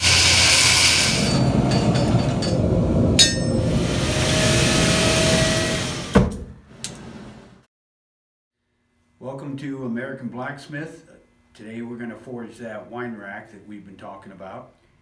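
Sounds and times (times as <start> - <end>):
hammer striking metal: 0.0 - 5.2
steady rushing noise: 0.0 - 6.1.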